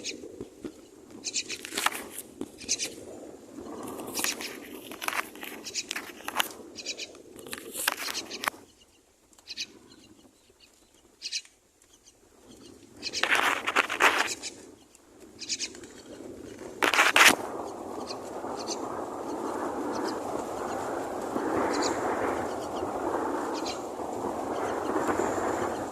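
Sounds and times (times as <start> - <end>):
steady rushing noise: 0.0 - 8.6, 13.0 - 25.9
nestlings raspy begging calls: 1.2 - 1.6, 2.6 - 3.0, 6.8 - 7.2, 7.9 - 10.2, 11.2 - 16.6, 18.0 - 20.7, 21.7 - 22.8, 23.5 - 23.8.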